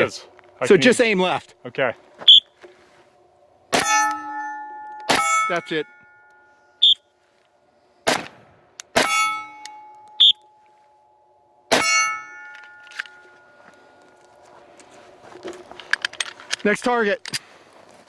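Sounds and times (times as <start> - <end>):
bullets clanging on steel targets: 3.7 - 6.5, 8.9 - 10.2, 11.7 - 14.4
short high pings: 3.8 - 7.2, 9.0 - 14.3.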